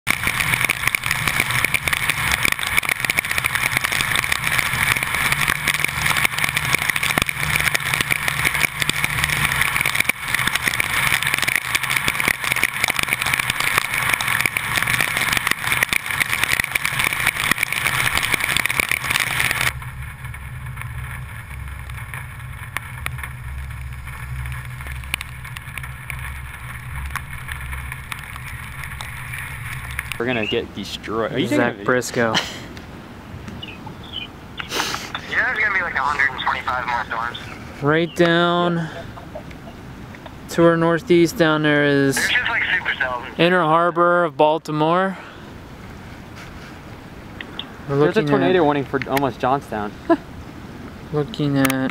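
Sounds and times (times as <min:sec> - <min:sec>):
heavy rain pelting a car: 0:00.1 - 0:30.5
low road rumble from car: 0:00.1 - 0:31.3.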